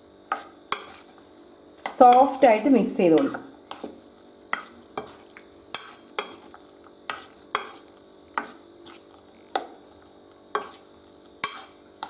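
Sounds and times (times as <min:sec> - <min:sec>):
spoon stirring in a bowl: 0:00.2 - 0:02.5, 0:03.1 - 0:12.0.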